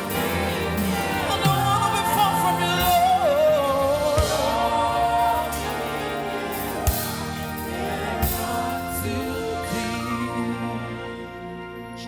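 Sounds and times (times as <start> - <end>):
gospel singing with band: 0.0 - 12.0
drum hits: 4.2 - 5.3.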